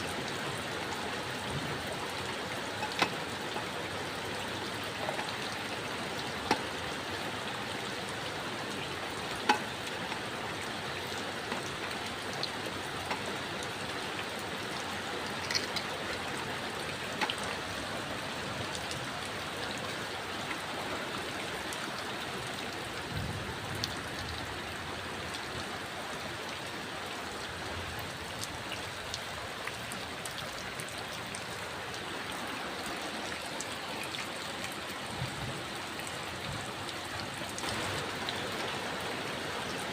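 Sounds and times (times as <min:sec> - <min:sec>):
steady rain falling: 0:00.0 - 0:39.9
raindrops clicking sharply: 0:15.2 - 0:16.4.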